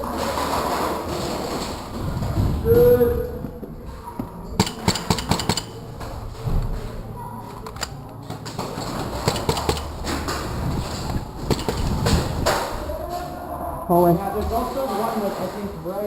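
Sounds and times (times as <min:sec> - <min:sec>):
airsoft gunfire clacks: 0:04.6 - 0:05.9, 0:09.2 - 0:10.2, 0:11.4 - 0:12.2.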